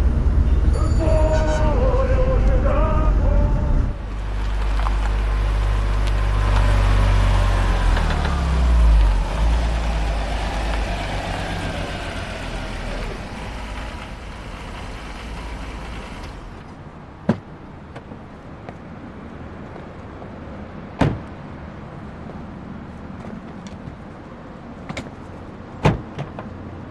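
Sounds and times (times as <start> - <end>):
vehicle engine moving off: 0.0 - 16.8.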